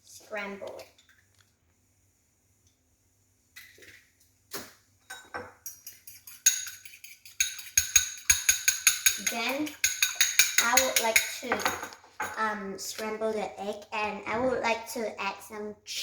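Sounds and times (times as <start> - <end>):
egg beaten in a bowl: 5.6 - 11.8.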